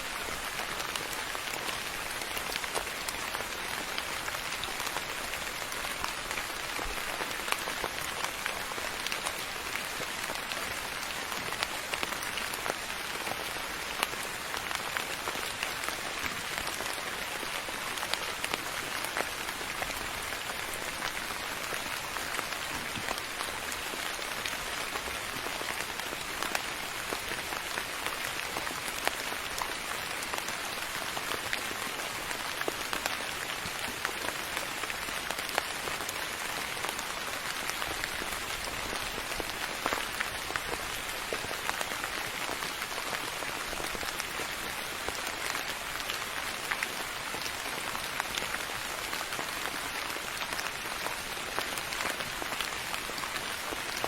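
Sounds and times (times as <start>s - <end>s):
soft rain pattering: 0.0s - 54.0s.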